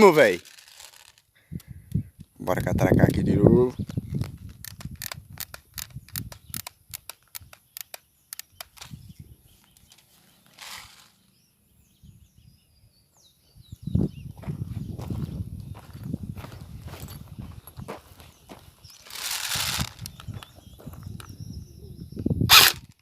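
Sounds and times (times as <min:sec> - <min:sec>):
magazine winding wheel ratcheting clicks: 0:04.6 - 0:08.8
faint bird chirps: 0:06.0 - 0:16.0, 0:19.8 - 0:22.5.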